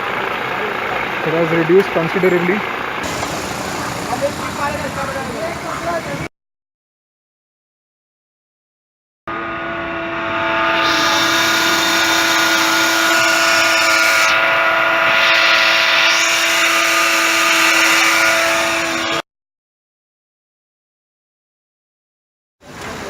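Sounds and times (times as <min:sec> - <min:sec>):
car engine running: 0:00.0 - 0:06.3
steady whine: 0:00.0 - 0:06.3, 0:09.3 - 0:19.2.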